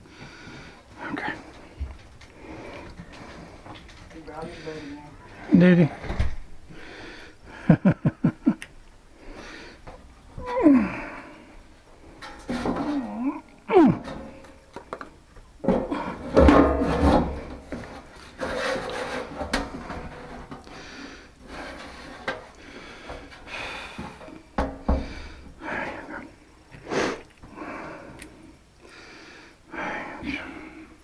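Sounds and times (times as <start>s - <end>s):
parts scraping and rubbing: 11.9s - 25.4s.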